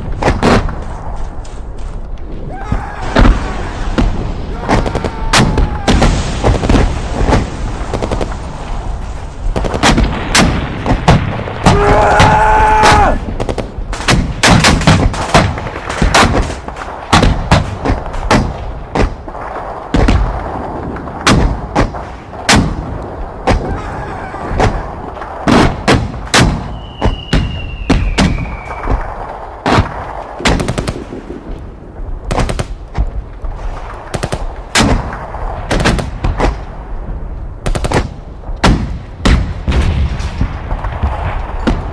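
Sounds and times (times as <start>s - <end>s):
rifle and machine-gun fire: 3.2s - 11.8s, 13.3s - 23.0s, 28.2s - 31.5s, 37.6s - 41.9s.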